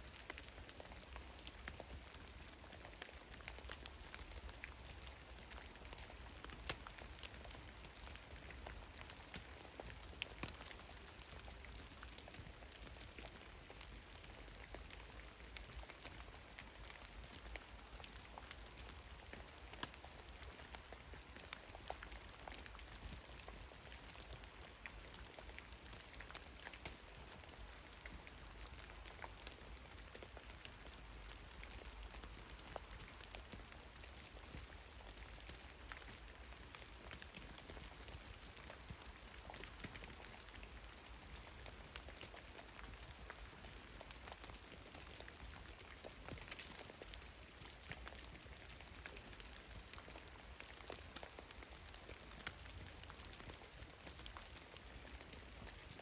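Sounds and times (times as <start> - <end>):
faint steady hiss: 0.0 - 56.0.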